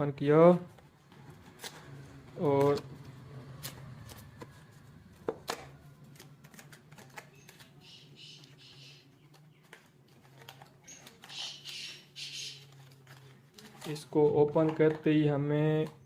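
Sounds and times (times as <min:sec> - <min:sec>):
packaging clicks and taps: 0:00.7 - 0:07.8, 0:08.4 - 0:11.4.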